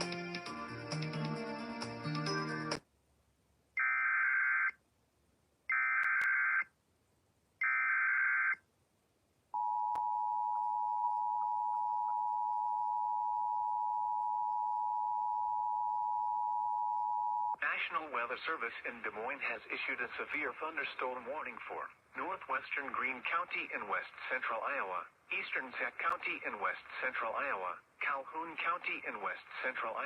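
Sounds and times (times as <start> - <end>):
music: 0.0 - 2.8.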